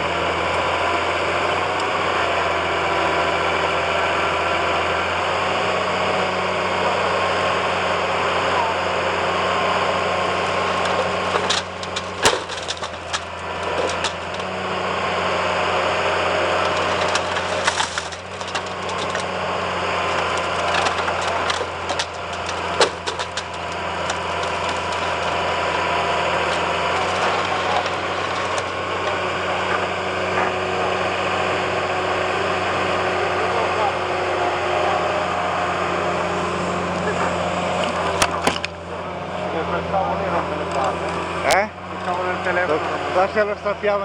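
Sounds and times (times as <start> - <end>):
diesel engine running: 0.0 - 44.0
crusher jaws cracking material: 16.5 - 29.0.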